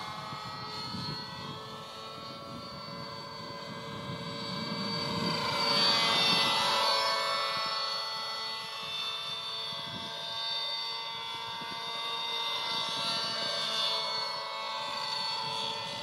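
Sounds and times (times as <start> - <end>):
model helicopter engine whining: 0.0 - 16.0.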